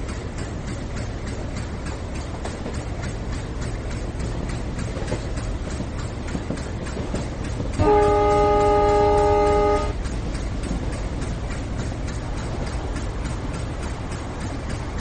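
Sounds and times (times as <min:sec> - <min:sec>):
train rumbling on rails: 0:00.0 - 0:15.0
train wheel clicks: 0:00.0 - 0:15.0
locomotive horn blast: 0:07.8 - 0:10.0.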